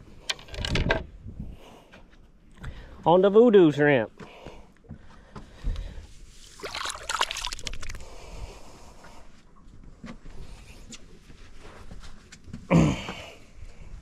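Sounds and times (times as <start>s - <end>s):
water splashing beside a boat: 6.3s - 8.5s.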